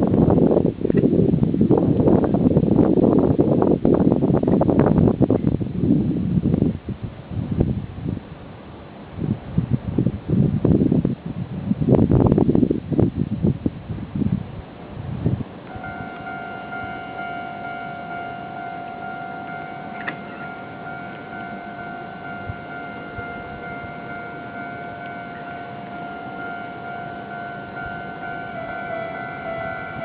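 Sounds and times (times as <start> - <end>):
level-crossing warning bell: 15.6 - 30.0.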